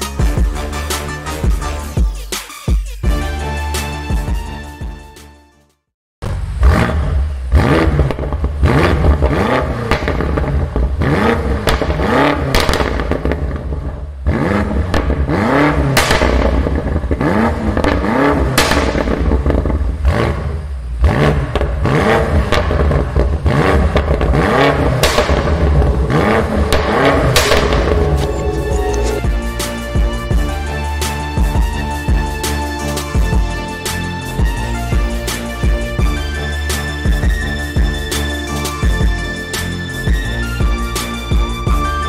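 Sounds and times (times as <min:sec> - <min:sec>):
car engine revving: 0:06.3 - 0:29.7
exhaust crackles and pops: 0:11.6 - 0:14.0, 0:22.4 - 0:28.3.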